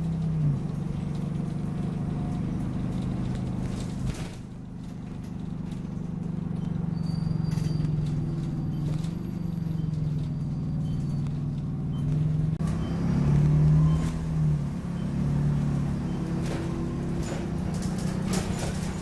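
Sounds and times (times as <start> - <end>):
bus diesel engine running: 0.0 - 19.0
faint high squeaks: 6.4 - 19.0.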